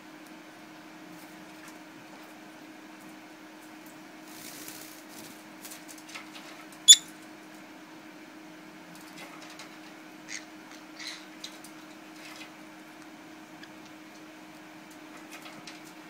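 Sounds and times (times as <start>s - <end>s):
low room hum: 0.0s - 16.0s.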